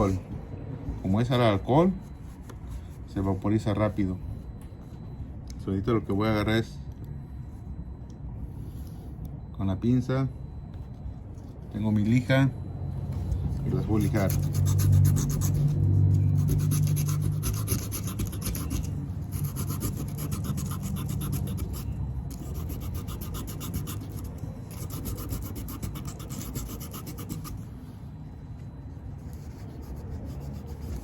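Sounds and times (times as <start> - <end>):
sandpaper rasping on brake pad: 14.0 - 27.6.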